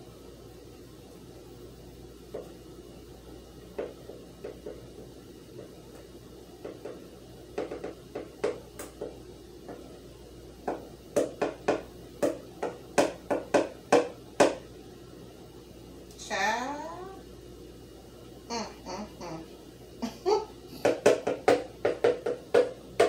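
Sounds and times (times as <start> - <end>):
utensil knocking against mixing bowl: 7.6 - 9.9, 10.6 - 14.6, 20.8 - 23.0.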